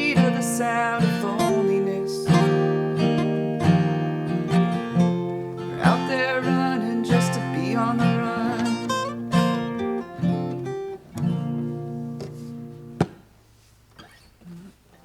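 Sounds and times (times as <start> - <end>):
acoustic guitar strumming: 0.0 - 15.0.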